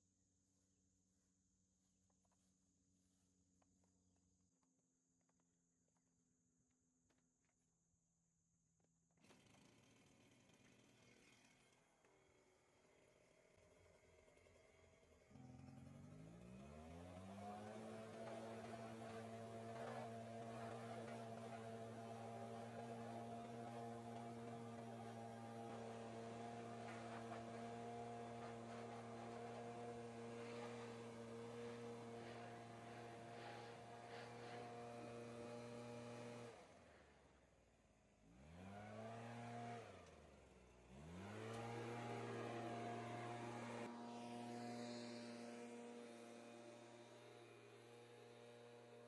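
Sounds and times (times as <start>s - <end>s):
small engine running and revving: 9.2s - 37.4s, 38.1s - 49.0s.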